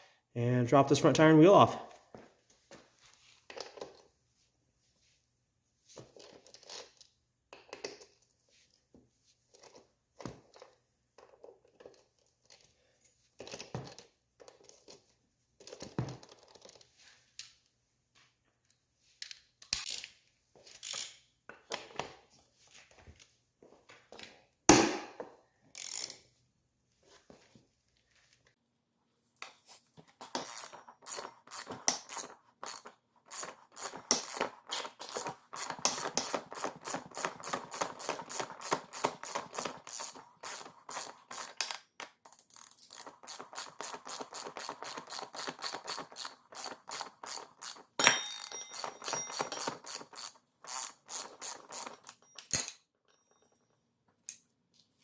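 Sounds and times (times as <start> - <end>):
wrench scraping and clicking on metal: 6.1 - 8.2, 19.2 - 21.2, 25.7 - 26.2, 30.1 - 53.6.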